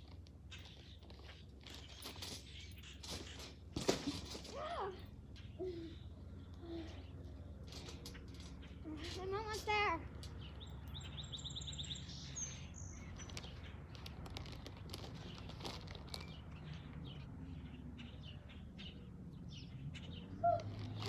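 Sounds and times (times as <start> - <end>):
low background hum: 0.0 - 21.0
small birds chirping: 0.0 - 21.0
high bird trill: 8.7 - 13.4.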